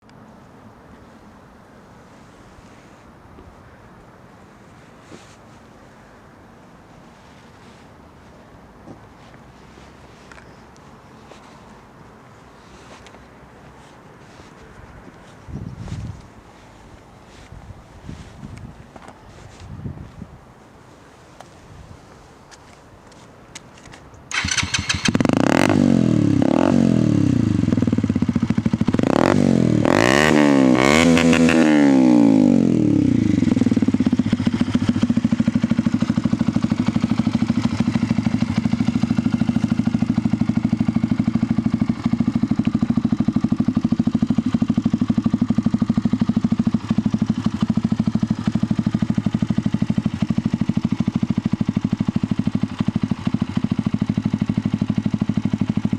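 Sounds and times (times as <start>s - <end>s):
motorcycle engine idling: 24.3s - 29.4s, 33.1s - 55.9s
motorcycle engine revving: 24.3s - 55.9s.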